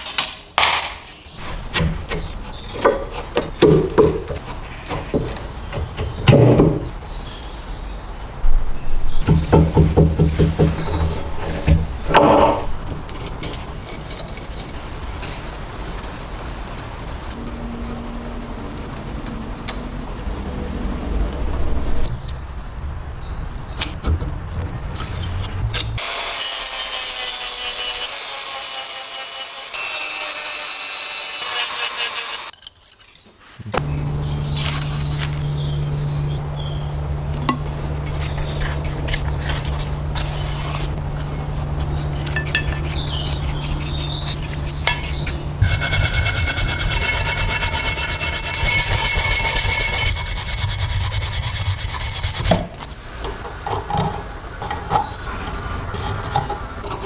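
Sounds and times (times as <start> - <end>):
scrubbing rust off metal: 41.7 - 52.9.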